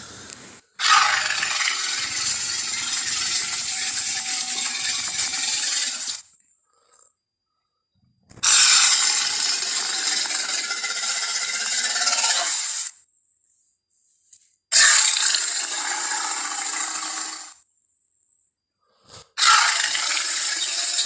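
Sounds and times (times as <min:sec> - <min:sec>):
dinosaur roar: 0:00.8 - 0:05.3, 0:19.4 - 0:20.7.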